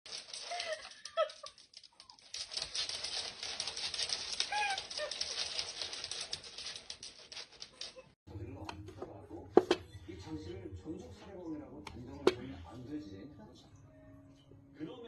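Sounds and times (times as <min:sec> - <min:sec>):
scratchy rustling and clicking: 0:00.1 - 0:08.2.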